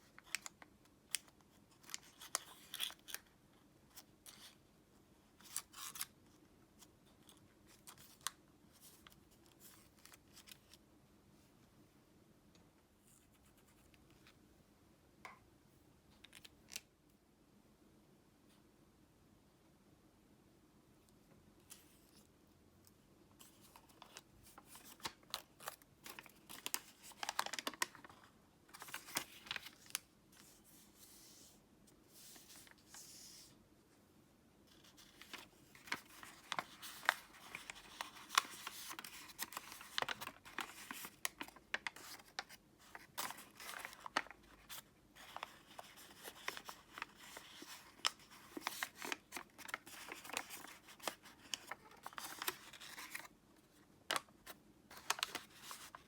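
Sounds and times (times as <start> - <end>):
paper crinkling and rustling: 0.0 - 3.3, 23.4 - 33.5, 34.7 - 56.0.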